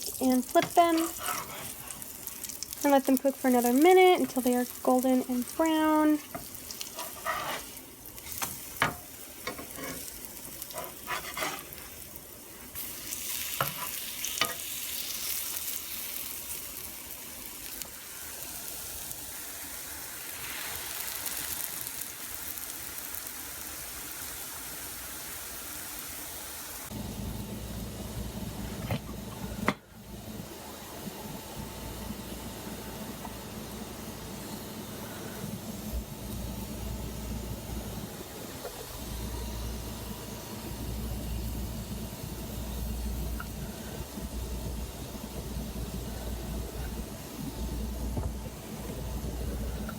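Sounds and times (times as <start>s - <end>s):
batter sizzling in frying pan: 0.0s - 49.9s
steady low hum: 26.9s - 49.9s.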